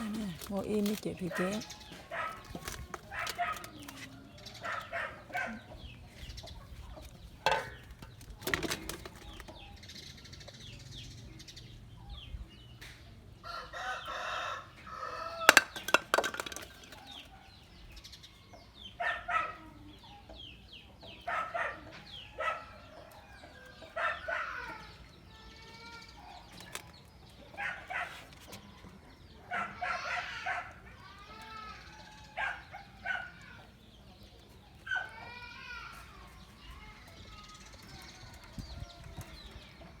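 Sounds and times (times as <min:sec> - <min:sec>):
chickens clucking: 0:00.0 - 0:09.8
rooster crowing: 0:13.4 - 0:15.6
sharp clatters: 0:15.5 - 0:17.3.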